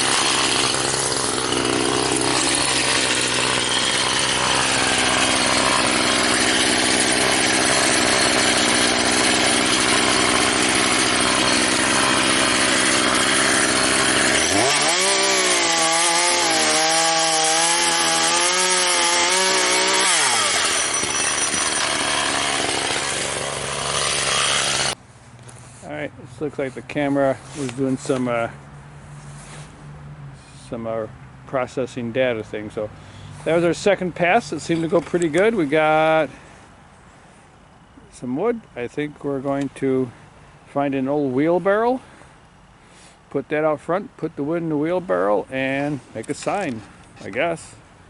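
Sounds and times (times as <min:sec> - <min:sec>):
sawmill engine cutting log: 0:00.0 - 0:25.0, 0:33.4 - 0:36.3.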